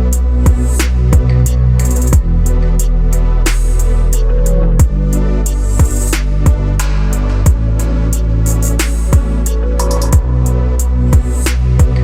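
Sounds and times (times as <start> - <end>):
electronic music with bass line: 0.0 - 12.0
kick drum hit: 0.5 - 1.3, 5.8 - 7.7.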